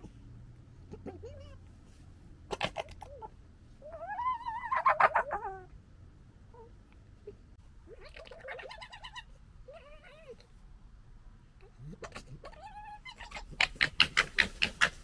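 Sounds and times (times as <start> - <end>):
foxes gekkering chatter: 2.5 - 5.7, 7.9 - 10.4, 11.6 - 15.0.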